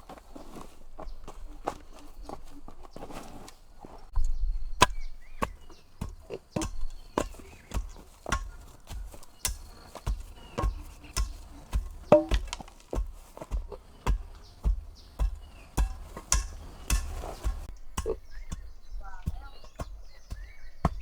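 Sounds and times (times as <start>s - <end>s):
chopping wood: 4.8s - 21.0s.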